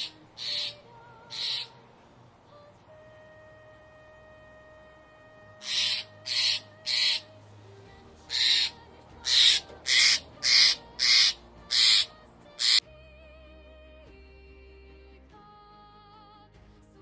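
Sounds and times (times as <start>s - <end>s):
bird screechy calls: 0.0s - 1.8s, 5.6s - 7.3s, 8.3s - 12.8s
faint background music: 0.0s - 17.0s.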